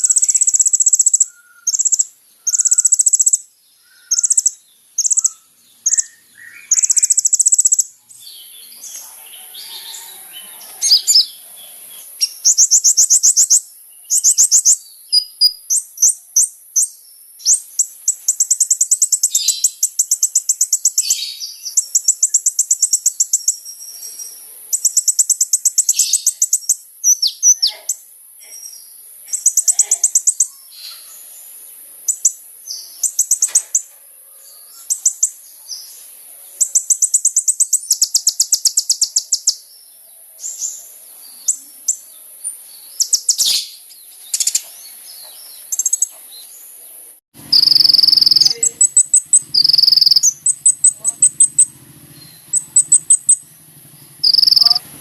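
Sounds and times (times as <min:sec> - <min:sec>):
bird singing high trills: 0:00.0 - 0:28.0, 0:28.8 - 0:31.3, 0:32.0 - 0:35.5, 0:36.5 - 0:46.4, 0:47.4 - 0:55.0.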